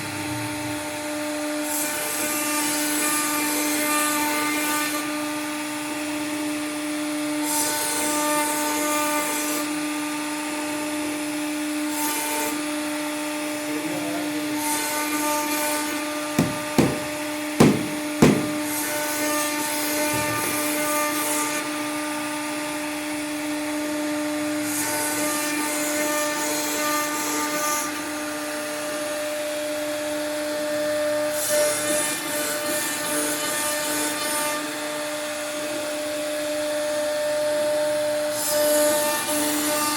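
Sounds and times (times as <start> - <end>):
sharp knocks: 16.4 - 18.6.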